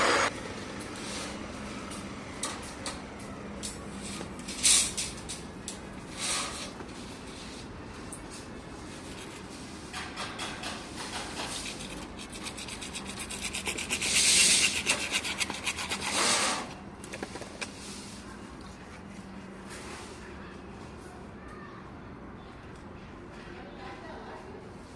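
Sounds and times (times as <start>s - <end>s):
hand tool rasping: 11.6s - 16.6s.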